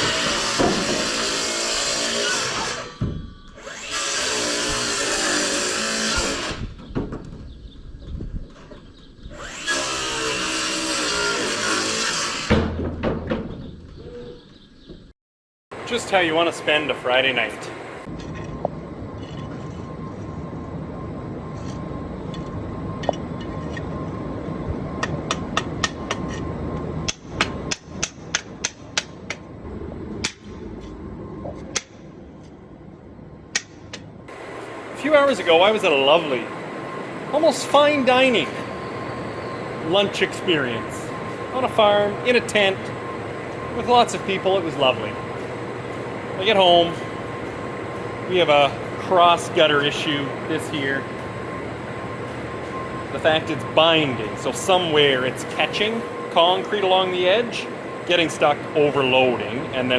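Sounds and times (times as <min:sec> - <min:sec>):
power tool grinding: 0:00.0 - 0:03.0, 0:03.6 - 0:06.7, 0:09.3 - 0:12.5
steady hum: 0:15.7 - 0:59.9.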